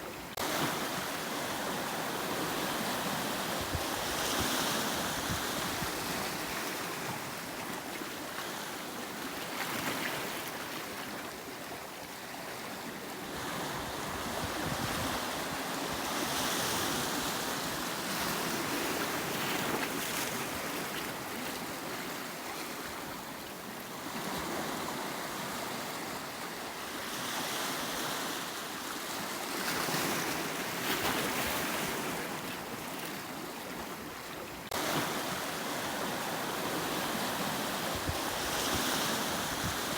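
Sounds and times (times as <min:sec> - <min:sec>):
sea waves breaking on rocks: 0:34.6 - 0:39.9.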